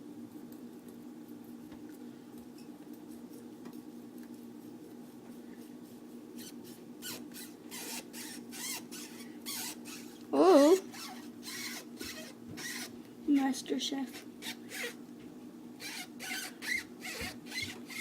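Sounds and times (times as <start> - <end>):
knife sawing into rubber ball: 6.4 - 10.2, 10.8 - 13.0, 14.1 - 15.0, 15.8 - 18.0
blade squeaking on rubber: 6.4 - 13.0, 14.1 - 15.0, 15.8 - 18.0.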